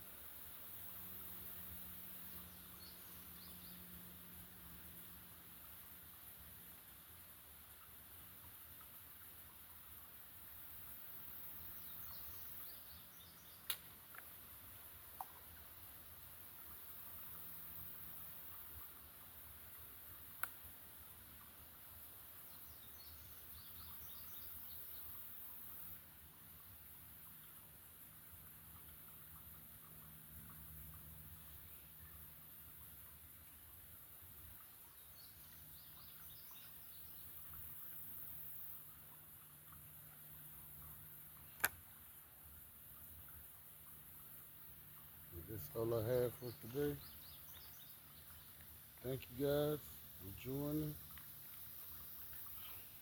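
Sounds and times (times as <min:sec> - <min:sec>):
faint hiss: 0:00.0 - 0:53.0
sharp click: 0:41.6 - 0:41.8
faint high chirps: 0:51.9 - 0:53.0.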